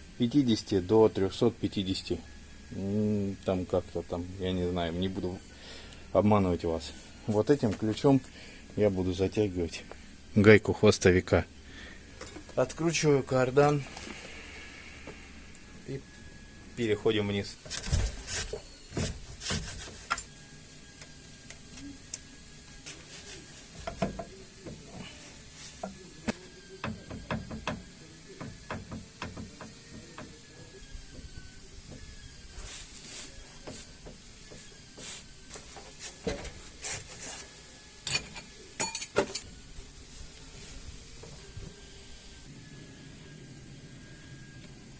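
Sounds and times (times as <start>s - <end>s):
hand tools and metal parts clattering: 17.6s - 20.4s, 32.6s - 39.6s.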